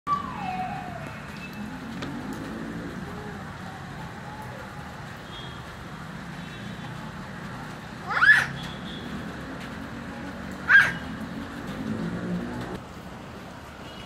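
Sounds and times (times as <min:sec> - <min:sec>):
animal call rising and falling: 0:00.1 - 0:01.2, 0:10.6 - 0:11.1
outdoor background noise: 0:00.1 - 0:14.0.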